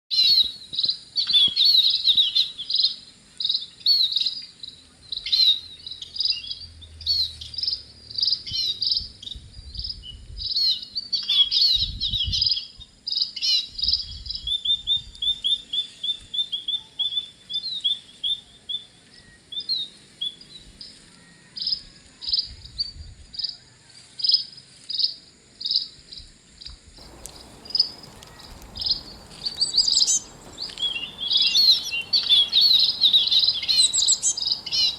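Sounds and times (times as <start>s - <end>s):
high insect trill: 27.0s - 34.9s
songbirds chirping and singing: 27.0s - 34.9s.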